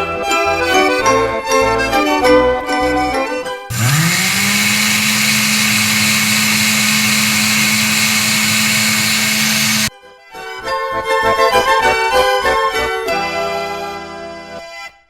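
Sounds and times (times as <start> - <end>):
electric motor humming and hissing: 3.7 - 9.9.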